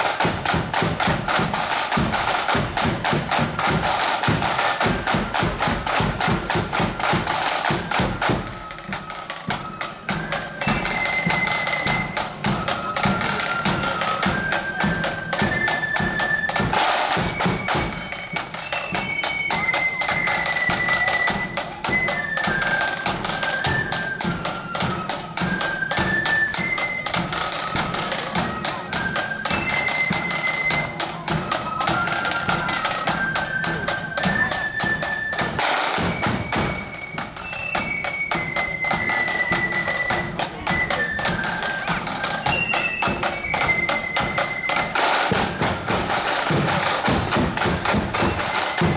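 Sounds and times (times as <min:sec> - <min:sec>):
snare drums rattling: 0:00.0 - 0:25.5, 0:33.6 - 0:48.9
flute band playing: 0:00.0 - 0:48.9.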